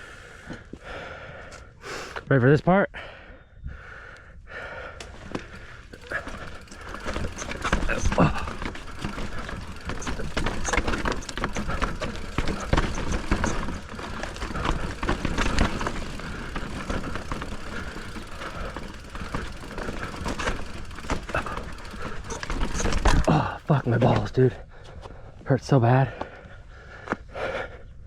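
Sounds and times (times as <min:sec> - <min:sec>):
clatter and knocking on rocky trail: 0:05.0 - 0:25.1.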